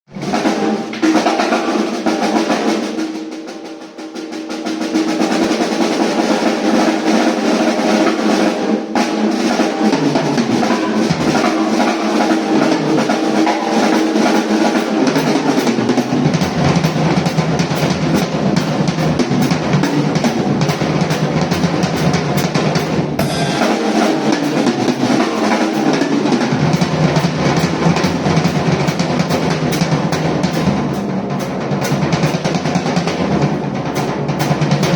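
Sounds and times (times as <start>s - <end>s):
low drums: 0.1s - 34.9s
snare drum rolls: 0.1s - 34.9s.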